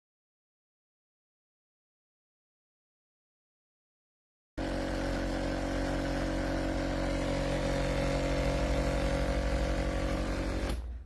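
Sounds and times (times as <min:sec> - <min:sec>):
espresso machine humming: 0:04.6 - 0:10.8.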